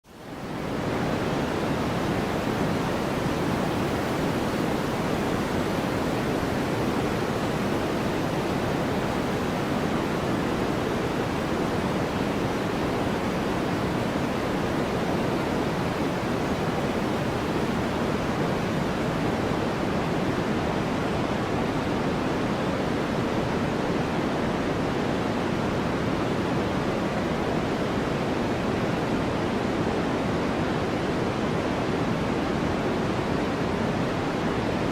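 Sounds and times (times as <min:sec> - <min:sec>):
white noise hiss: 0:00.1 - 0:34.9.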